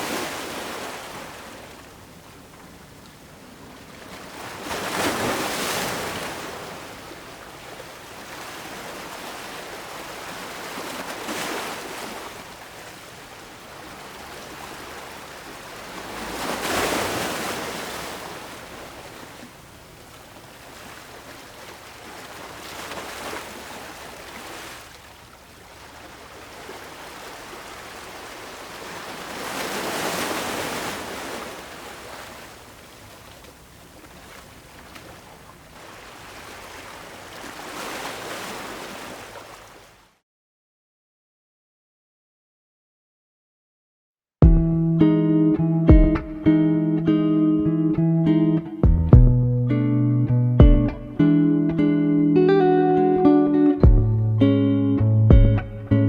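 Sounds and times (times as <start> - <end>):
ocean waves breaking on beach: 0.0 - 40.0.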